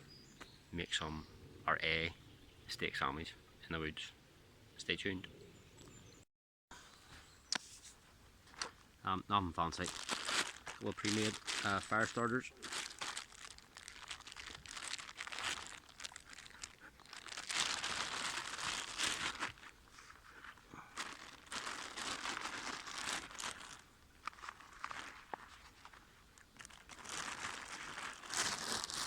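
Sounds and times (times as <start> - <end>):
wrapper crinkling and tearing: 9.7 - 29.0.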